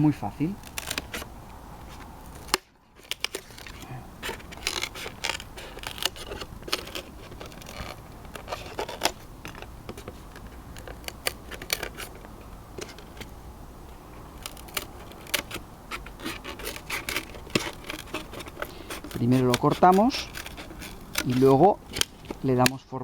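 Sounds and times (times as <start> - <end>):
polystyrene foam tray being cut: 2.3 - 9.3, 14.4 - 22.5.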